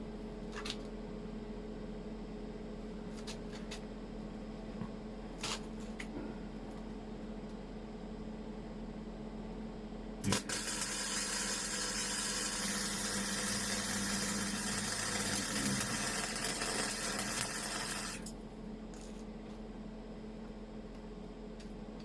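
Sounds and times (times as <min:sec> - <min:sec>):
welding arc crackling and hissing: 0:10.2 - 0:18.3.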